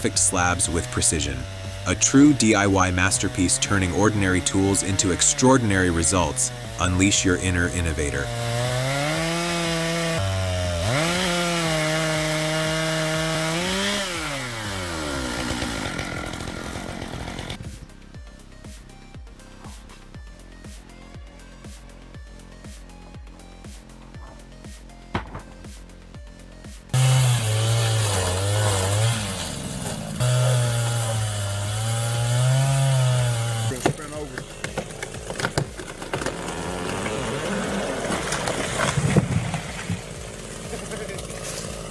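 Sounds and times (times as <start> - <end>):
chainsaw cutting log: 0.0 - 17.8, 26.9 - 41.9.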